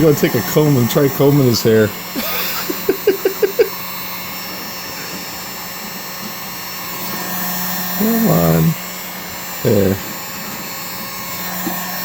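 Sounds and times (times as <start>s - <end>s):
heat gun blowing air: 0.0s - 12.0s
person chuckling: 2.2s - 3.8s.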